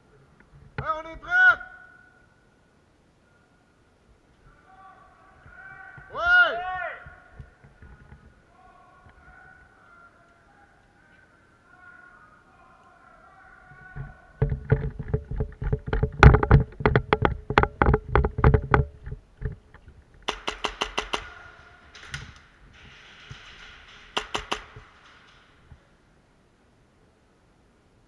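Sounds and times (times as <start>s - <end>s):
airsoft guns firing: 20.2s - 26.1s.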